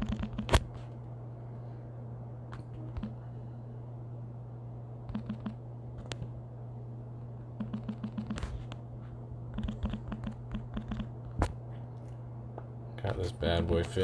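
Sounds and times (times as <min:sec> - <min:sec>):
keyboard typing clicks: 0:00.0 - 0:00.7, 0:02.9 - 0:03.2, 0:05.1 - 0:06.2, 0:07.6 - 0:08.5, 0:09.5 - 0:11.1
low electrical hum: 0:00.0 - 0:14.0.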